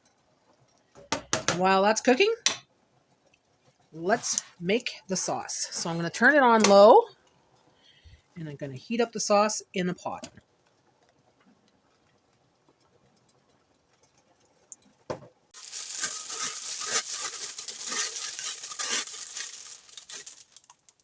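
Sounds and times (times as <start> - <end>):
plastic bag crinkling: 15.6 - 21.0.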